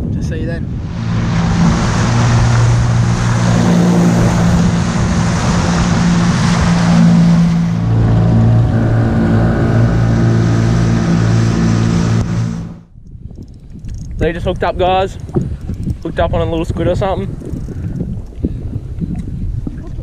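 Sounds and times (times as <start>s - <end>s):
rush of wind and water: 0.0s - 20.0s
boat motor running: 0.6s - 12.9s.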